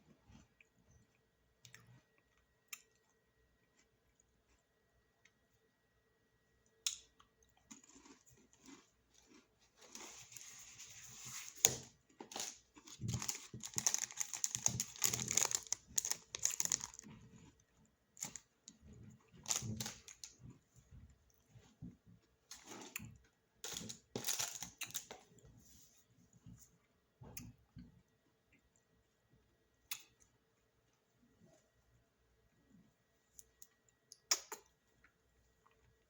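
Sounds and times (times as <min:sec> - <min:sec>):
snack packaging crinkling: 0:07.7 - 0:17.1, 0:19.4 - 0:20.4, 0:23.6 - 0:25.2.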